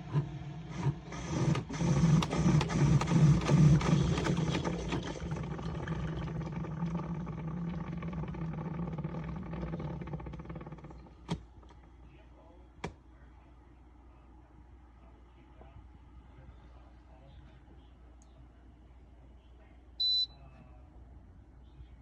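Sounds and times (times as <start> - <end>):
coffee maker pump humming: 0.0 - 12.2.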